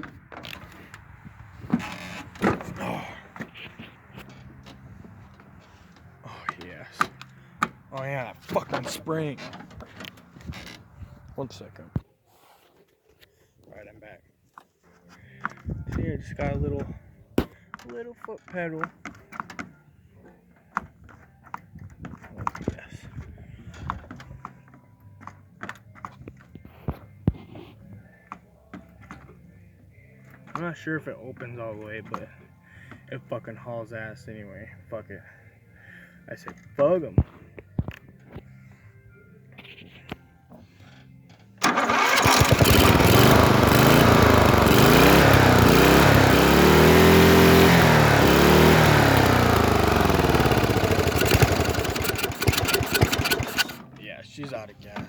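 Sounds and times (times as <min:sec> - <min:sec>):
lawnmower engine revving: 0:41.6 - 0:53.9.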